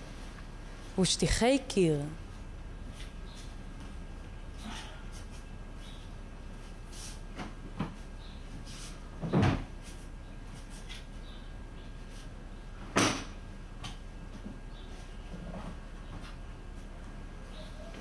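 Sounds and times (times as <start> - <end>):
low background hum: 0.0 - 18.0.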